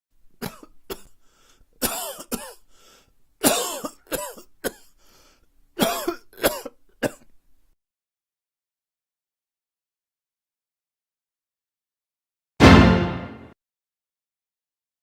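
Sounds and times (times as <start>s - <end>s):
person coughing: 0.4s - 1.2s, 1.8s - 2.7s, 3.4s - 5.0s, 5.8s - 7.3s.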